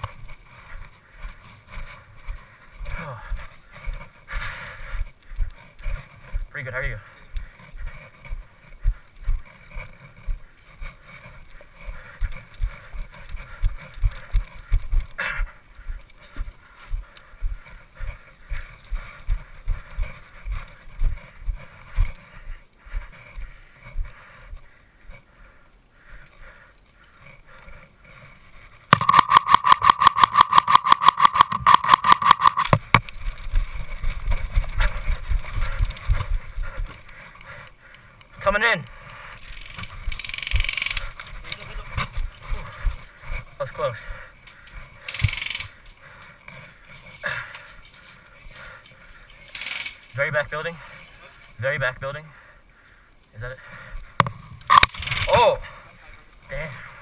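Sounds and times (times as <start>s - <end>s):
gearbox whine: 28.9s - 33.2s.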